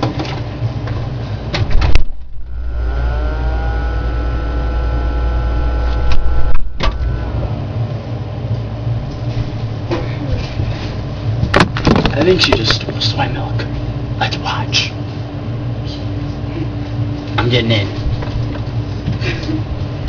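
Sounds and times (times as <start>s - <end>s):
motor humming: 1.9s - 8.1s.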